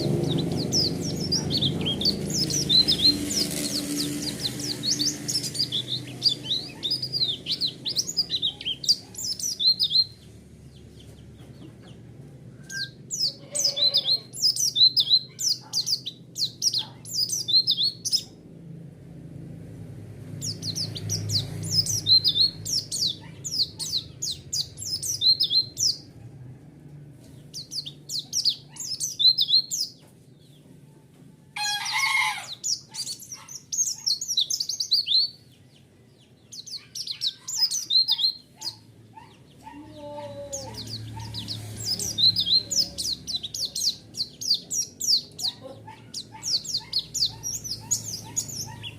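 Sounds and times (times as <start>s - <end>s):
bird twittering chirps: 0.0s - 11.7s, 12.6s - 18.4s, 20.4s - 26.1s, 27.4s - 30.0s, 32.4s - 35.5s, 36.2s - 39.5s, 40.5s - 48.9s
lower harsh bird call: 12.6s - 18.3s.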